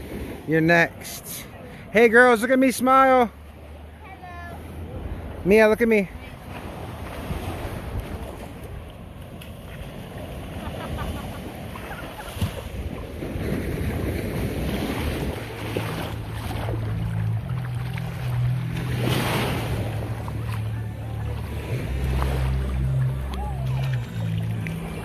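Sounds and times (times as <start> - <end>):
surf on a beach: 0.0 - 25.0
wind buffeting microphone: 6.8 - 20.1
low steady hum: 15.1 - 25.0.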